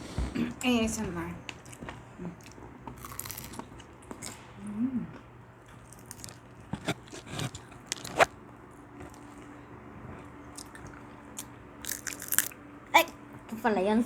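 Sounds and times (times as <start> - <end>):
crunchy food chewing: 1.5 - 12.6.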